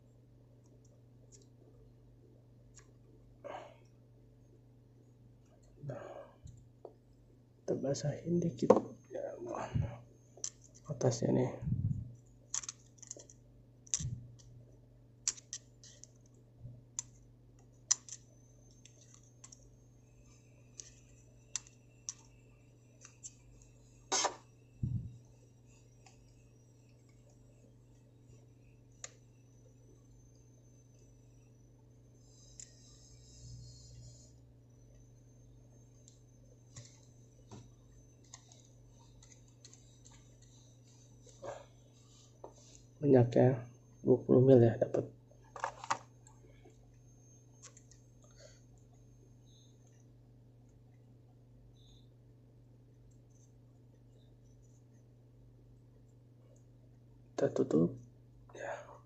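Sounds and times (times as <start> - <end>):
low steady hum: 0.0 - 59.0
small objects clicking and tapping: 10.4 - 10.9, 12.5 - 14.5, 15.2 - 16.3, 17.0 - 19.6.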